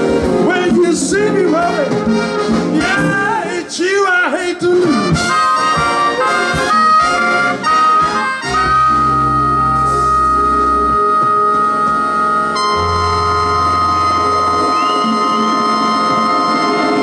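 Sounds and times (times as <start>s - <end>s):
band playing music: 0.0s - 17.0s
sustained high note: 8.4s - 17.0s
steady low bass: 8.7s - 17.0s.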